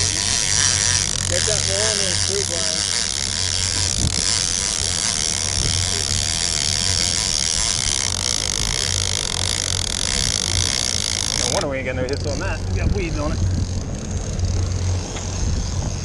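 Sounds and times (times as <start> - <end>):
boat engine drone: 0.0 - 16.0
rush of wind and water: 3.5 - 16.0.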